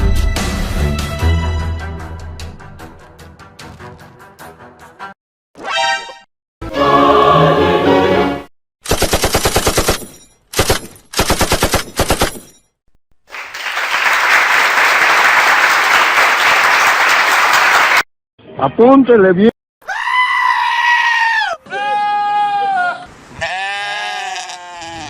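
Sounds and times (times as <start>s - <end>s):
choir chord: 6.6s - 8.5s
machine-gun fire: 8.9s - 12.4s.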